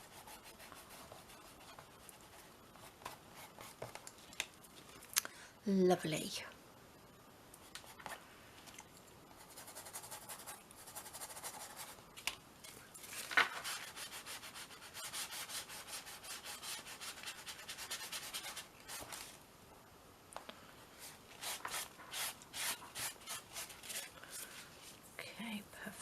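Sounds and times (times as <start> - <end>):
brush rubbing on canvas: 13.6 - 19.2.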